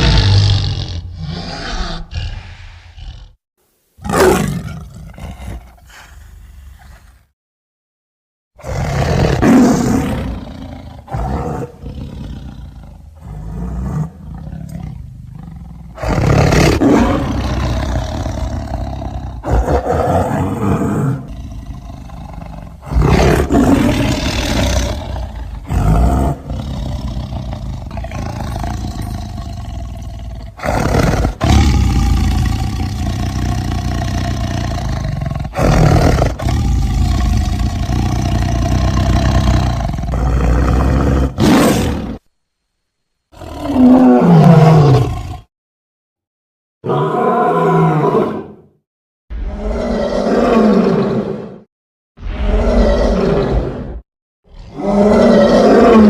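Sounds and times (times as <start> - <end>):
monster roars and growls: 0.0 - 3.4, 49.3 - 56.0.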